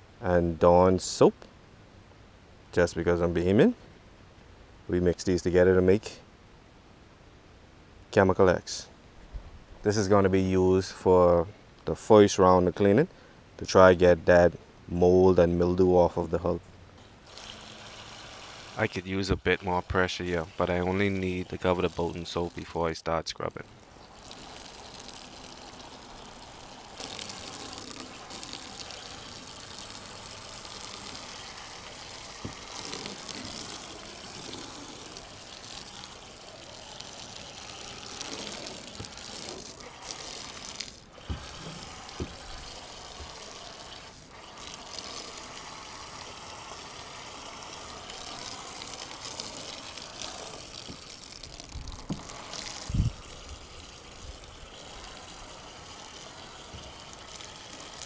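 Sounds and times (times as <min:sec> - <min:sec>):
hiss of soap sprayer: 0:36.7 - 0:51.1.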